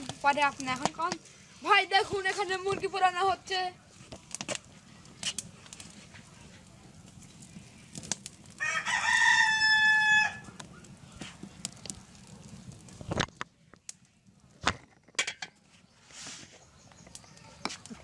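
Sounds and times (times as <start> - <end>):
rooster crowing: 8.6 - 10.5.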